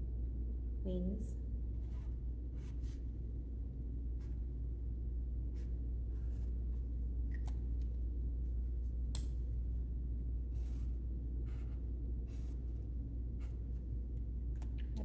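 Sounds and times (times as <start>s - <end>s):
low steady hum: 0.0s - 15.0s.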